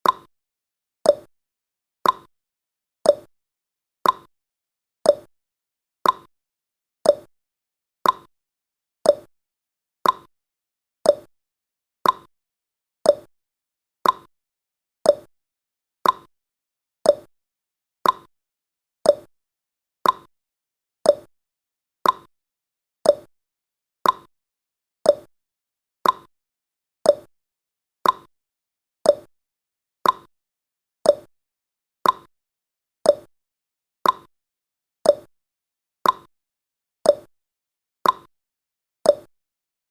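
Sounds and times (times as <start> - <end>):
timer ticking: 0.0 - 0.3, 1.0 - 1.3, 2.0 - 2.3, 3.0 - 3.3, 4.0 - 4.3, 5.1 - 5.3, 6.0 - 6.3, 7.0 - 7.3, 8.0 - 8.3, 9.0 - 9.3, 10.0 - 10.3, 11.0 - 11.3, 12.0 - 12.3, 13.0 - 13.3, 14.0 - 14.3, 15.0 - 15.3, 16.0 - 16.3, 17.0 - 17.3, 18.0 - 18.3, 19.0 - 19.3, 20.0 - 20.3, 21.0 - 21.3, 22.0 - 22.3, 23.0 - 23.3, 24.0 - 24.3, 25.0 - 25.3, 26.0 - 26.3, 27.0 - 27.3, 28.0 - 28.3, 29.0 - 29.3, 30.0 - 30.3, 31.0 - 31.3, 32.0 - 32.3, 33.0 - 33.3, 34.0 - 34.3, 35.0 - 35.3, 36.0 - 36.3, 37.0 - 37.3, 38.0 - 38.3, 39.1 - 39.3.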